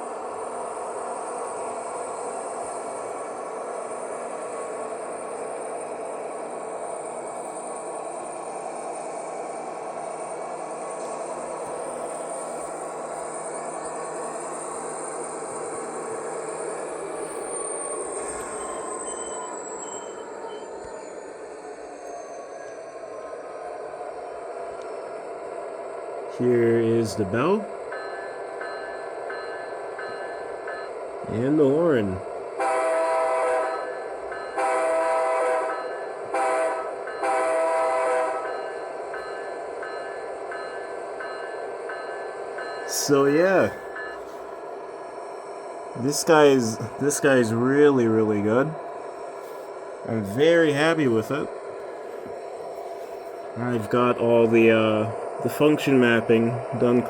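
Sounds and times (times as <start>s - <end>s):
model locomotive diesel engine sound: 0.0s - 57.0s
model locomotive horn through speaker: 32.6s - 33.8s, 34.6s - 38.4s.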